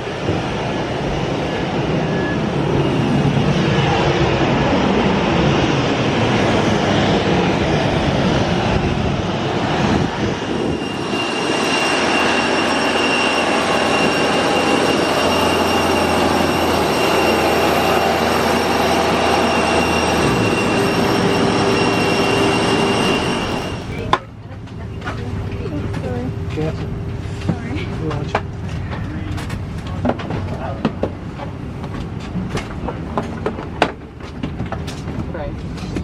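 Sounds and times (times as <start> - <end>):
jet airliner engine noise: 0.0 - 36.0
high steady whine: 8.7 - 24.4.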